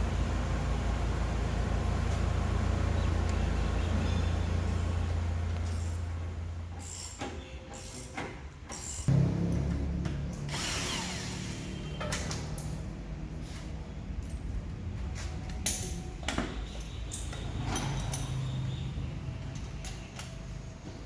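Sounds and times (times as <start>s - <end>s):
ratchet clicks: 6.8s - 9.1s
power tool motor running: 10.4s - 11.8s.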